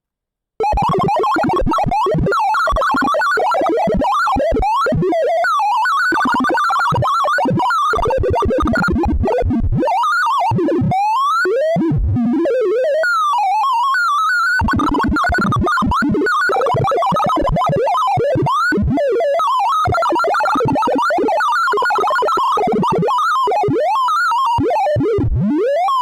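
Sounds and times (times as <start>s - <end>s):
rapid synthesized beeps: 0.6s - 9.1s, 13.2s - 18.6s, 19.5s - 24.9s.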